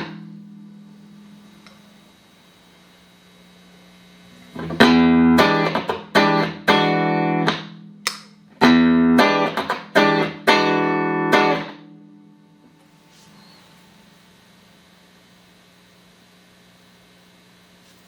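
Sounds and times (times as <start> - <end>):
clean electric guitar strumming chords: 0.0 - 1.9, 4.5 - 13.0.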